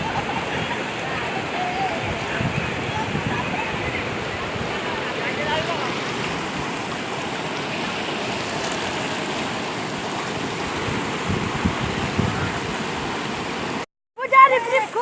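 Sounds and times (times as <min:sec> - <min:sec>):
flowing stream water: 0:00.0 - 0:15.0.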